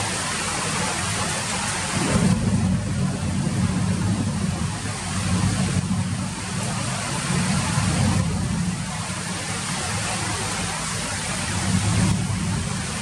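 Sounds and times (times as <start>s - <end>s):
rain falling: 0.0s - 13.0s
low rumble: 1.6s - 10.0s.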